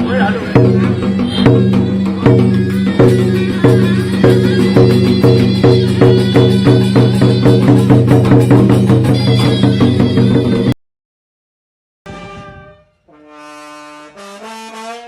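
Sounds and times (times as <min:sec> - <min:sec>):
drum beating: 0:00.0 - 0:10.8.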